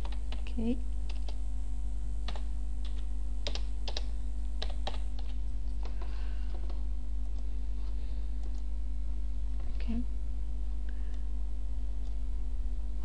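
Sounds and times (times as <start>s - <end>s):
computer keyboard keystrokes: 0.0s - 0.5s, 1.1s - 1.4s, 2.3s - 7.4s
low electrical hum: 0.0s - 13.0s.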